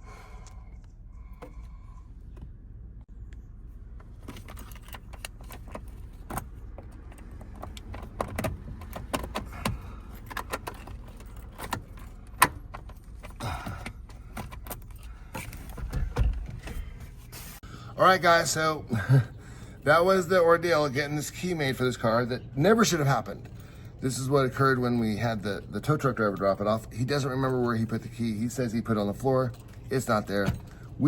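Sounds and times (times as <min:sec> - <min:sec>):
metal keys jangling: 0:04.3 - 0:16.2, 0:22.2 - 0:31.0.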